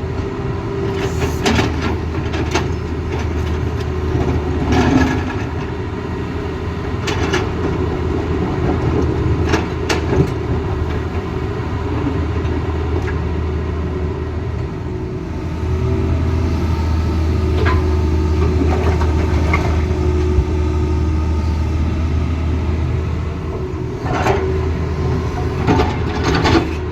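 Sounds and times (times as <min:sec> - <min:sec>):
diesel engine running: 0:00.0 - 0:26.9.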